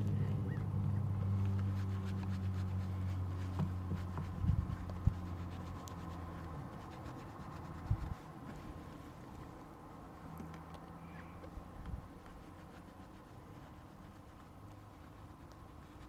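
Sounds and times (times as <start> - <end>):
low engine drone: 0.0 - 4.0
cloth scrubbing wheel rim: 0.1 - 9.3.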